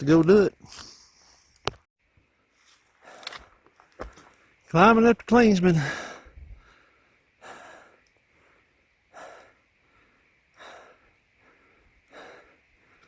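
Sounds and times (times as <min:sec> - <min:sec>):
person breathing hard: 0:05.8 - 0:13.0.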